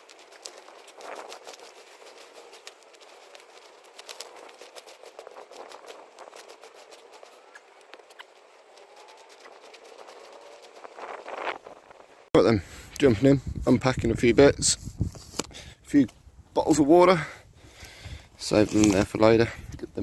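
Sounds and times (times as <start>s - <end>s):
dry leaves and twigs crackling: 0.0s - 12.3s, 17.6s - 20.0s.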